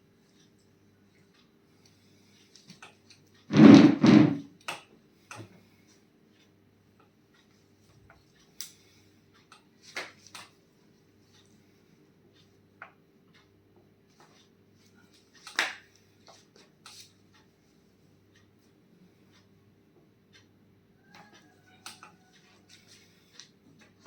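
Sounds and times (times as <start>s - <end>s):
loud knocks: 3.5s - 4.5s.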